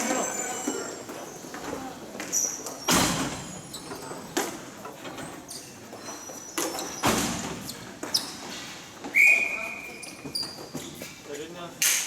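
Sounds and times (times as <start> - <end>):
shoes squeaking on floor: 2.2 - 4.4, 5.4 - 11.3.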